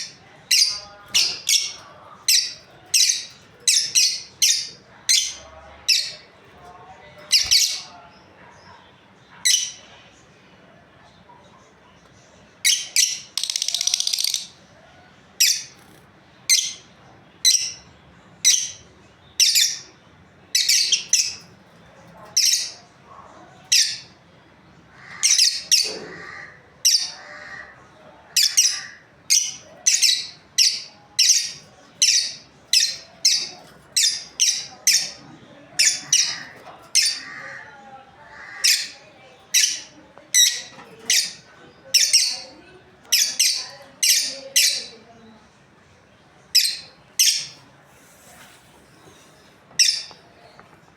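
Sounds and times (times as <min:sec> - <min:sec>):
lovebirds chirping: 0:00.0 - 0:06.3, 0:07.2 - 0:08.0, 0:28.3 - 0:45.5.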